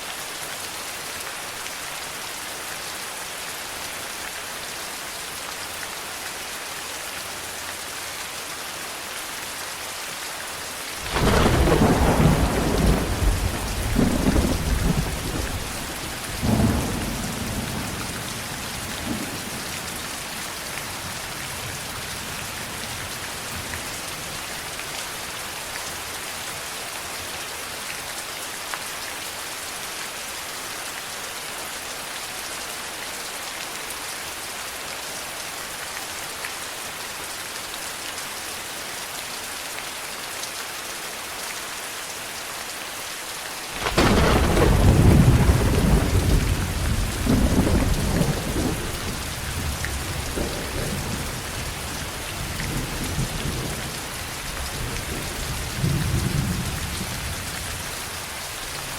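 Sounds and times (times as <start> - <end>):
steady rain: 0.0 - 58.9
thunderclap rumbling: 11.0 - 18.2, 43.8 - 51.5.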